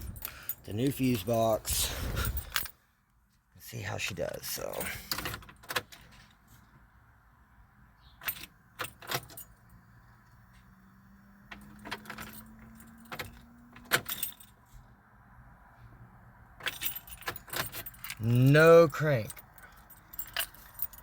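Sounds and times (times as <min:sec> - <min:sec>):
key ring jangling: 0:19.3 - 0:21.0.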